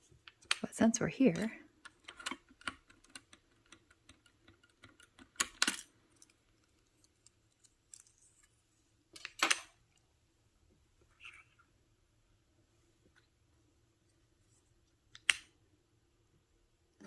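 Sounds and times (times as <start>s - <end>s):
keycaps clicking: 1.8s - 8.1s.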